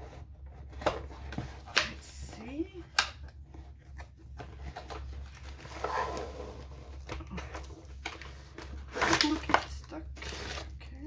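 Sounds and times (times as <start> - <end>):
packaging rustling and crinkling: 3.4 - 11.0.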